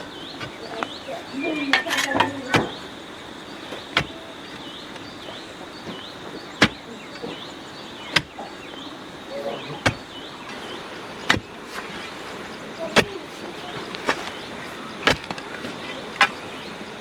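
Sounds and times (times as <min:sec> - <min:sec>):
high chirp: 0:00.0 - 0:03.0
sharp single knocks: 0:06.6 - 0:06.9, 0:09.8 - 0:10.2, 0:11.2 - 0:11.6.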